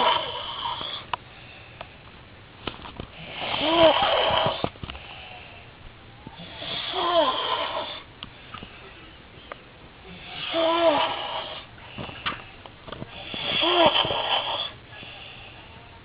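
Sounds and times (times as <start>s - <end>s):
man snoring loudly: 0.0s - 0.9s, 3.2s - 4.6s, 6.4s - 8.0s, 10.1s - 11.7s, 13.2s - 14.8s.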